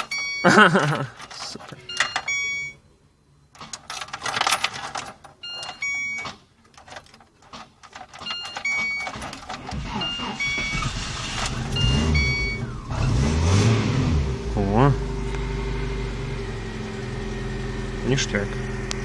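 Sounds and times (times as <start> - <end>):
keys rattling: 0.0 - 2.7, 3.5 - 10.8
short electronic beeps: 1.8 - 2.8, 5.4 - 6.3, 9.8 - 13.4
car engine starting and running: 7.6 - 19.0.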